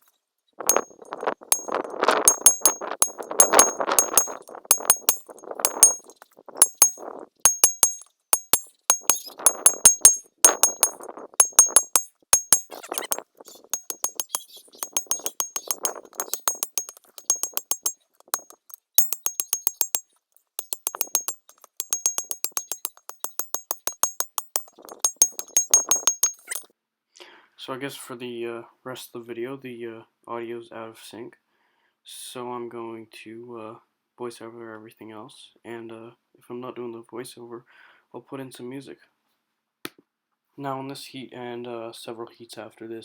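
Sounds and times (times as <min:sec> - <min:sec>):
hammer striking steel on anvil: 0:01.5 - 0:06.0, 0:06.6 - 0:13.2, 0:13.8 - 0:20.0, 0:20.6 - 0:26.6.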